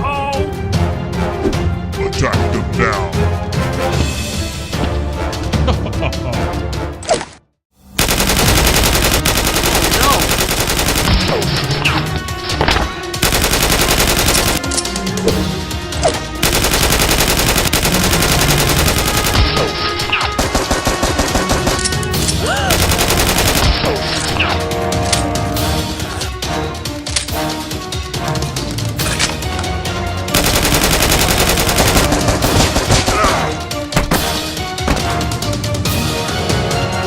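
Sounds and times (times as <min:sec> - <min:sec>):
rapid automatic gunfire: 0:08.0 - 0:11.7, 0:13.2 - 0:14.6, 0:16.4 - 0:21.8, 0:22.7 - 0:24.0, 0:30.4 - 0:33.3.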